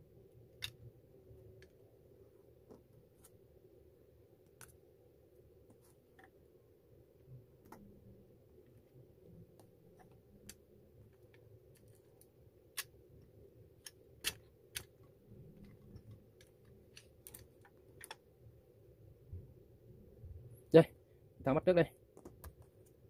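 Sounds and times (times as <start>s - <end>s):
clicks and taps of small parts: 13.8s - 15.0s.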